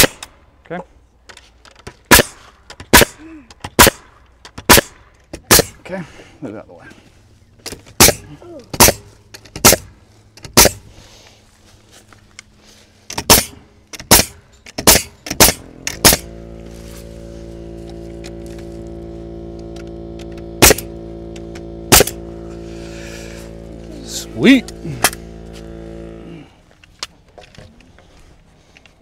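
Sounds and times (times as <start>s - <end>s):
nail gun shots into wood: 0.0s - 0.4s, 2.1s - 5.8s, 8.0s - 10.8s, 13.1s - 16.4s, 19.7s - 22.2s
steady motor hum: 4.8s - 28.9s.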